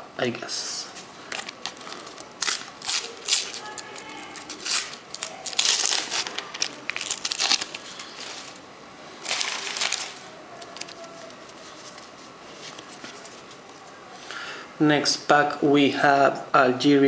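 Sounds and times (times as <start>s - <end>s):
wrapper crinkling and tearing: 1.3s - 8.6s, 9.2s - 13.4s.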